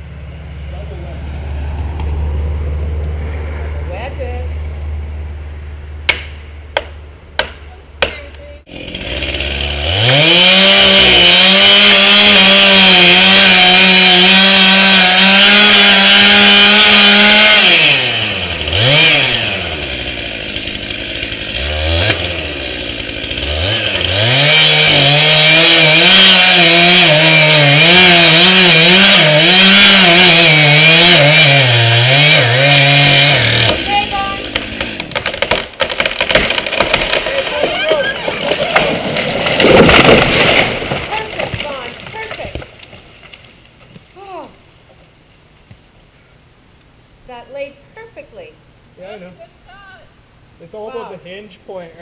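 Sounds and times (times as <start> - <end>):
chainsaw cutting wood: 6.1 - 43.4.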